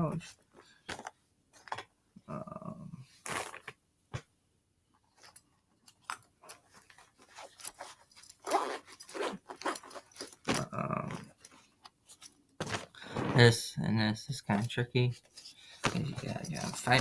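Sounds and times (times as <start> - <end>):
gear rustling and clicking: 5.0 - 13.0, 14.5 - 17.0
short low voice-like sound: 13.2 - 14.0.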